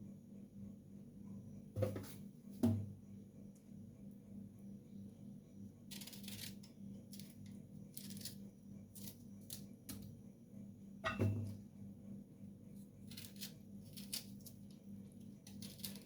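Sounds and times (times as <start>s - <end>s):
knife scraping lemon peel: 5.8s - 10.1s, 12.8s - 16.0s.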